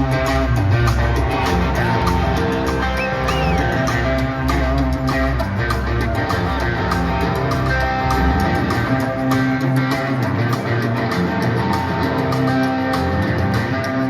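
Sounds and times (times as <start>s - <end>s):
deep bass: 0.0s - 14.0s
rock band playing: 0.0s - 14.0s
strummed guitar: 0.0s - 14.0s.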